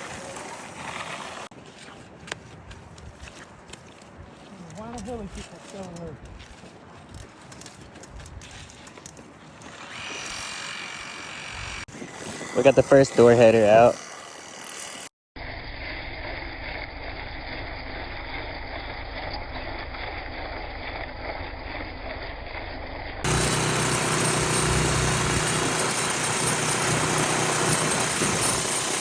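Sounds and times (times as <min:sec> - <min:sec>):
engine idling: 0:23.3 - 0:29.0.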